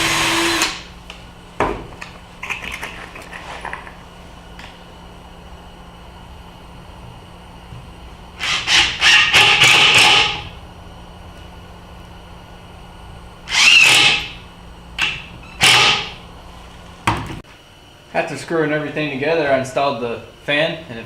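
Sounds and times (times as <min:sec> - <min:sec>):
power drill driving screws: 0:00.0 - 0:00.8, 0:08.4 - 0:10.4, 0:13.5 - 0:14.3, 0:15.6 - 0:16.1
steady low hum: 0:00.1 - 0:21.0.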